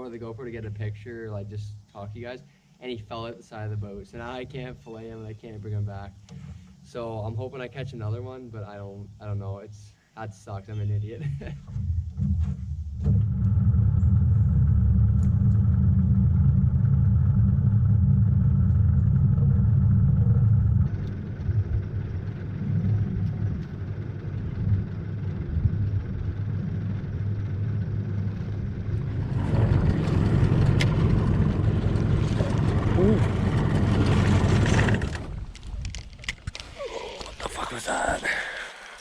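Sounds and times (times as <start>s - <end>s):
outboard motor running: 11.6s - 36.0s.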